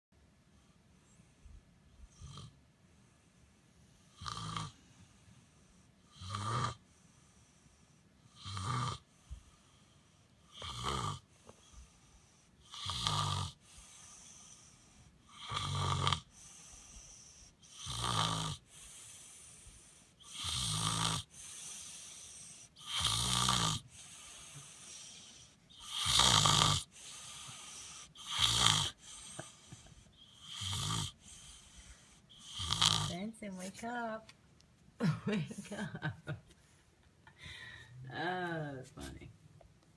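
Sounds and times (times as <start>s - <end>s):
person snoring: 4.2s - 4.8s, 6.1s - 6.8s, 8.3s - 9.0s, 10.5s - 11.2s, 12.6s - 14.7s, 15.3s - 19.2s, 20.2s - 33.2s.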